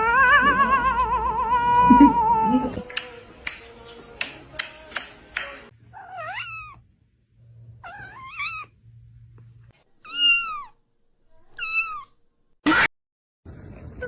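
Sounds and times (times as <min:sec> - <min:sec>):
cat meowing: 0:05.9 - 0:06.8, 0:07.8 - 0:08.7, 0:10.0 - 0:10.8, 0:11.5 - 0:12.2.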